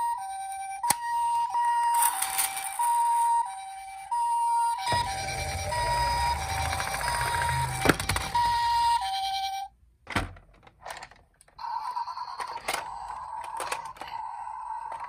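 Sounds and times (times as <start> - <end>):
two-tone toy ambulance siren: 0.0 - 9.7, 11.6 - 15.0.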